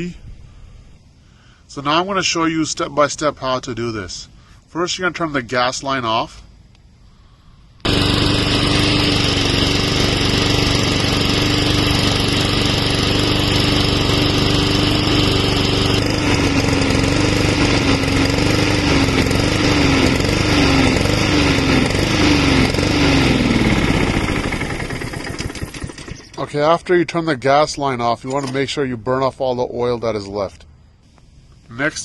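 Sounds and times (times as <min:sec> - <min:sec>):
lawnmower engine surging: 0:07.8 - 0:26.9.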